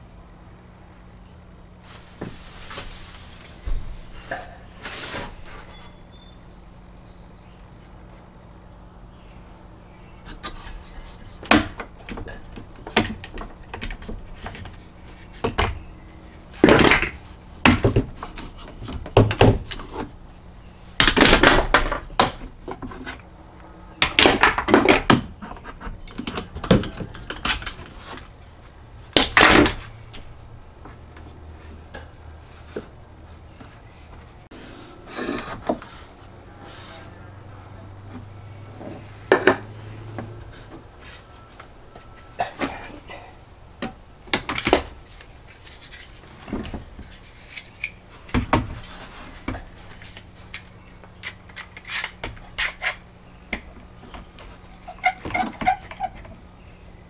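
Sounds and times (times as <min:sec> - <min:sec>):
tools and wood clattering: 0:10.3 - 0:15.8, 0:16.6 - 0:20.2, 0:21.0 - 0:23.2, 0:24.0 - 0:34.4, 0:38.0 - 0:42.9, 0:43.8 - 0:56.4.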